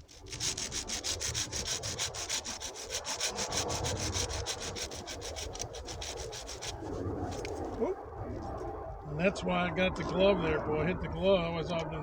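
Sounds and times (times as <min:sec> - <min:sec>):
hand saw cutting wood: 0:00.0 - 0:07.6.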